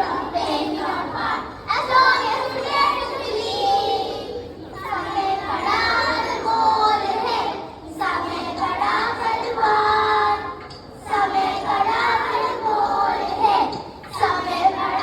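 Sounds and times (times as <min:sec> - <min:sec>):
children singing together: 0:00.0 - 0:15.0.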